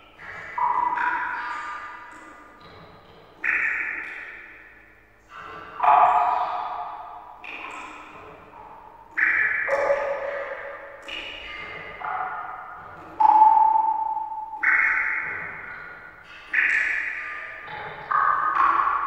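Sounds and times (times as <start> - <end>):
water drops plinking: 0.0 - 2.8, 3.4 - 4.5, 5.7 - 19.0.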